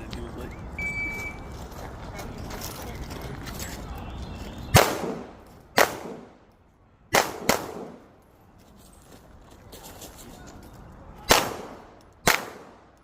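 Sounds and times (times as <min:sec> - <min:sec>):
pistol shots: 0:04.7 - 0:06.4, 0:07.1 - 0:08.0, 0:11.3 - 0:12.9.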